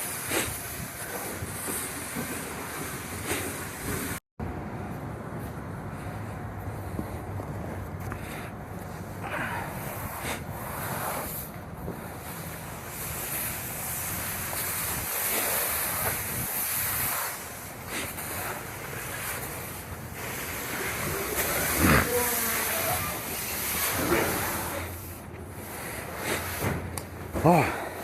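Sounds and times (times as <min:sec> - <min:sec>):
wind rushing on microphone: 0:06.4 - 0:17.4.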